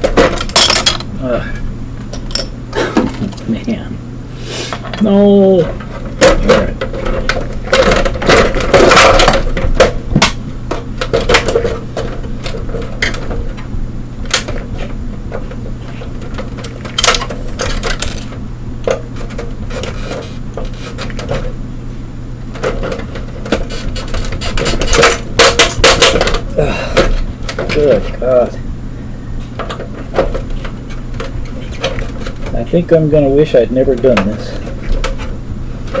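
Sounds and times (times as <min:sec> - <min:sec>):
steady low hum: 0:00.0 - 0:36.0
plastic covers clicking and snapping: 0:14.3 - 0:14.7.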